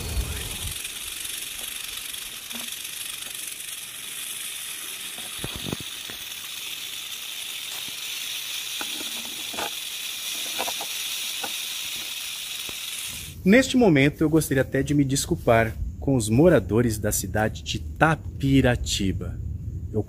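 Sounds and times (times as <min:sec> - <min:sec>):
high-pitched hiss: 0:00.0 - 0:20.0.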